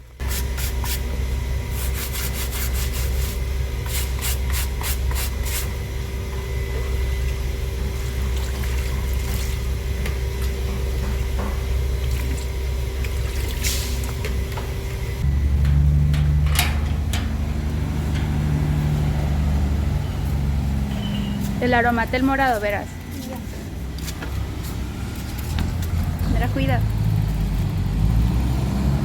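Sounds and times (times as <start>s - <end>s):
low machine hum: 0.0s - 28.2s
brush scrubbing shoe: 1.7s - 5.7s.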